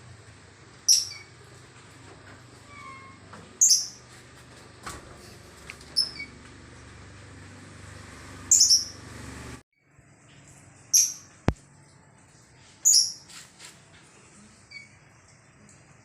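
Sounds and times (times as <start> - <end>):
bird chirping: 0.9 - 1.3, 2.7 - 4.0, 8.5 - 9.1, 10.9 - 11.3, 12.8 - 13.3.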